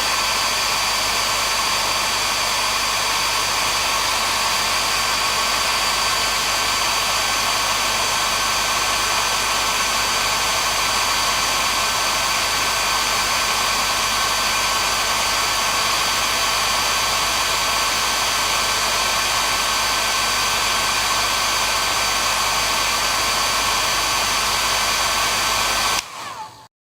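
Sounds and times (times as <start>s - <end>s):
hair dryer running: 0.0s - 26.7s.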